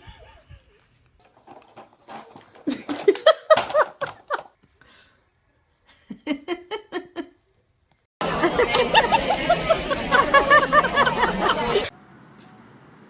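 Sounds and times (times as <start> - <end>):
person laughing: 0.0 - 0.8, 5.9 - 7.4.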